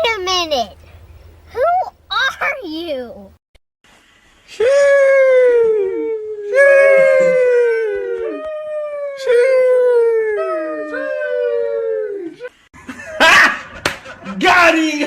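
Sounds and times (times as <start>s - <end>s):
dog howling: 4.8s - 12.5s.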